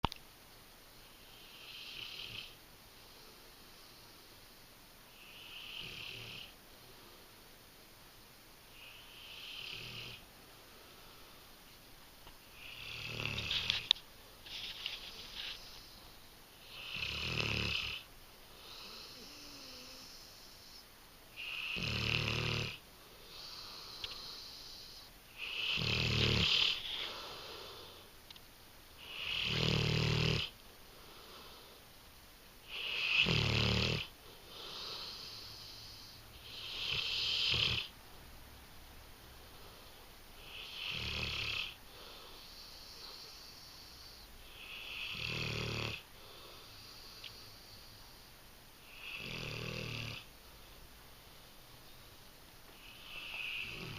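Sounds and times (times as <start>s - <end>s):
dog snoring: 1.3s - 2.6s, 5.1s - 6.6s, 8.7s - 10.2s, 12.5s - 13.9s, 16.6s - 28.0s, 29.0s - 31.7s, 32.6s - 38.0s, 39.6s - 48.0s, 48.8s - 50.3s, 52.8s - 53.9s.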